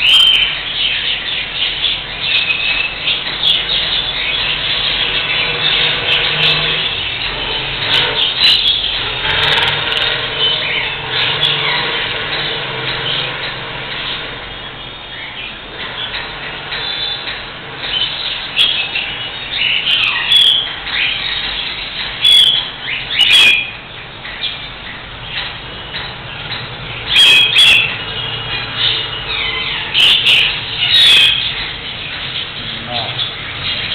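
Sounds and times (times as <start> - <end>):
cockatiel chirping and calling: 0.0 - 33.9
low hum: 0.6 - 19.6.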